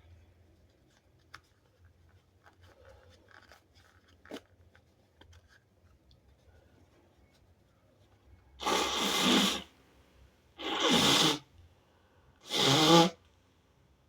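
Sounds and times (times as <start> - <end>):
person sneezing: 8.6 - 9.7, 10.6 - 11.4, 12.4 - 13.2.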